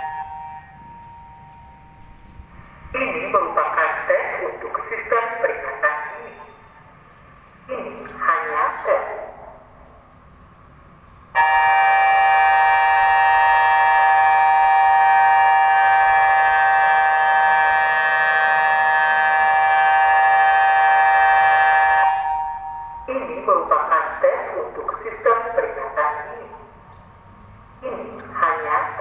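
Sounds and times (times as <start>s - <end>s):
warning siren chord: 0.0s - 2.5s, 11.4s - 23.5s.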